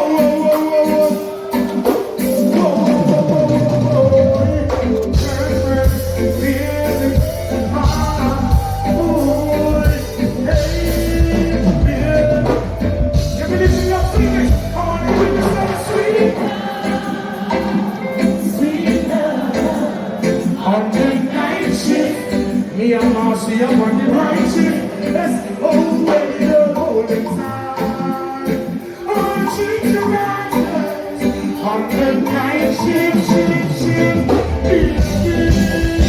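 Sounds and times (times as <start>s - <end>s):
live reggae band with singing: 0.0s - 36.0s
heavy bass line: 3.0s - 16.4s, 33.6s - 36.0s.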